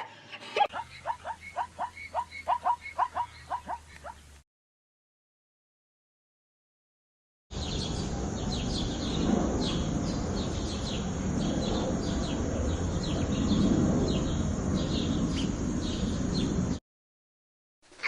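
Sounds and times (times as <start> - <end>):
small birds chirping: 0.3 - 4.4, 7.6 - 16.8.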